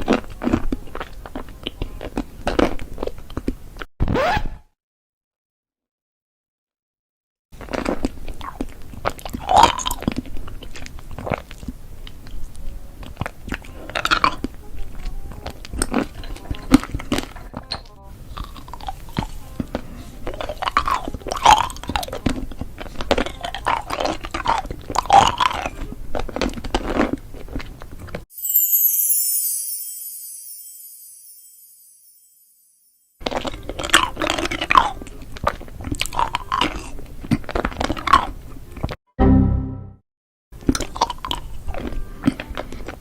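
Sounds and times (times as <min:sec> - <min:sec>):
person chewing crunchy food: 0:00.0 - 0:03.6, 0:07.6 - 0:12.4, 0:18.3 - 0:28.2, 0:33.2 - 0:39.0, 0:40.6 - 0:43.0
short jingle: 0:28.3 - 0:33.0.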